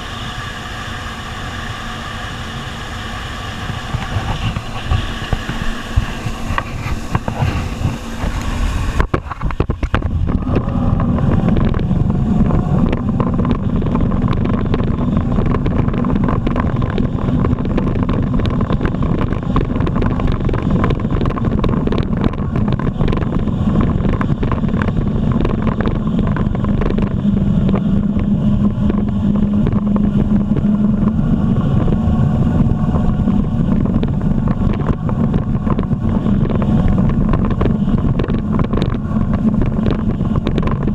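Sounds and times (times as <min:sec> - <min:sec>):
jet ski engine running: 0:00.0 - 0:40.9
wind noise on microphone: 0:00.0 - 0:40.9.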